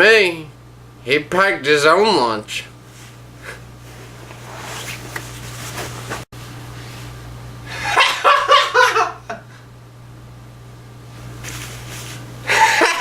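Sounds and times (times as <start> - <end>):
steady low hum: 0.0 - 13.0
burst of laughter: 12.5 - 13.0.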